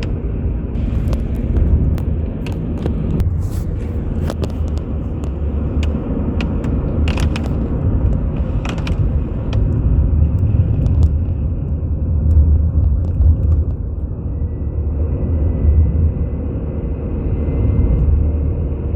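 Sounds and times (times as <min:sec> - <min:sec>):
car road rumble on wet road: 0:00.0 - 0:14.2.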